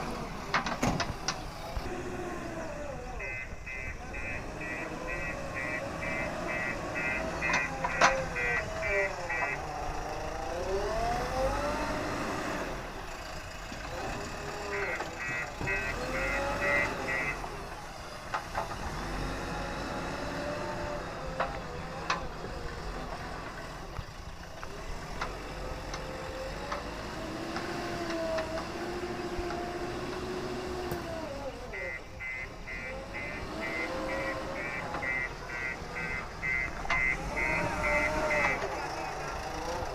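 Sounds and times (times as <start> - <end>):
diesel engine revving: 0.0 - 39.9
reversing alarm beeping: 2.9 - 9.7, 14.6 - 17.6, 31.7 - 38.6.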